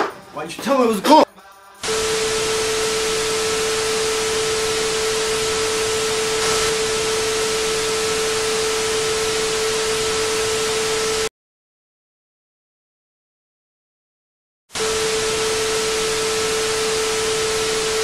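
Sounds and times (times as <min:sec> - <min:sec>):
static hiss: 0:01.8 - 0:07.0
steady tone: 0:01.8 - 0:11.3.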